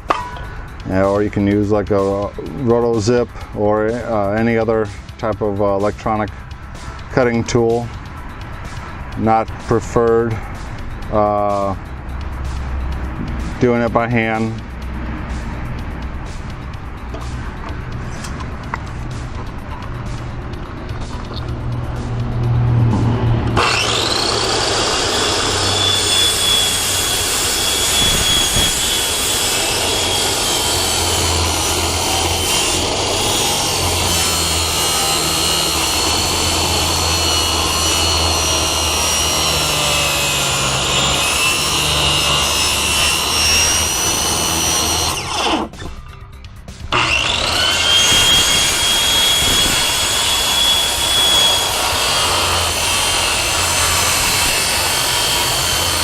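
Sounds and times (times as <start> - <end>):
circular saw cutting panel: 22.8 - 46.0, 46.9 - 56.0.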